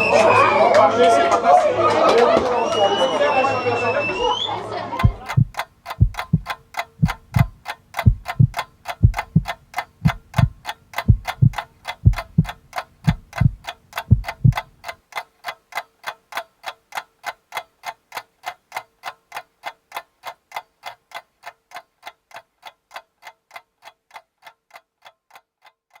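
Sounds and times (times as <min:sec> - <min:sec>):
deep drum beats: 0:05.0 - 0:14.9
rapid even ticking clicks: 0:05.0 - 0:26.0.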